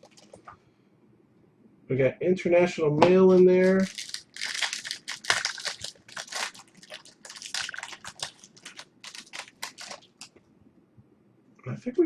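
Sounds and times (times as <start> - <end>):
plastic wrapping crinkling: 0.0 - 0.5, 3.6 - 10.4.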